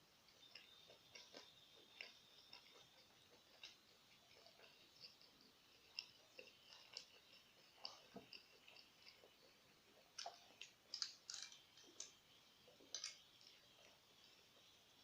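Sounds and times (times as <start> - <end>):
mouth clicks of chewing: 0.3 - 12.2.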